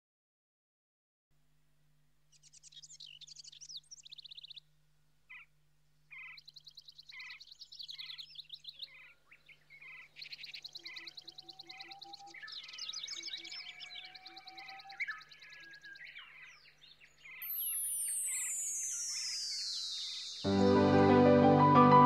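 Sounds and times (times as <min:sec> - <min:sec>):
faint steady low hum: 0:01.3 - 0:13.3
birds singing: 0:02.3 - 0:04.7, 0:05.3 - 0:05.5, 0:06.1 - 0:20.6.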